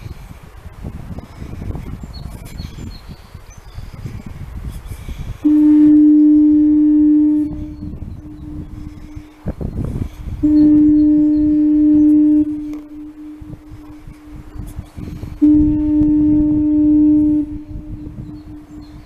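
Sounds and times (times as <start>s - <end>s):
low rumbling noise: 0.0s - 19.0s
fog signal low blasts: 5.4s - 19.0s.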